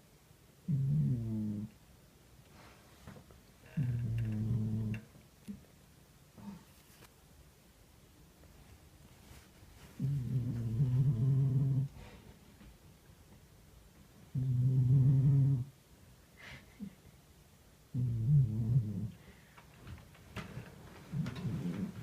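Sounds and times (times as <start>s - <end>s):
cat snoring: 0.6s - 1.7s, 3.7s - 5.0s, 10.0s - 11.9s, 14.3s - 15.7s, 17.9s - 19.2s.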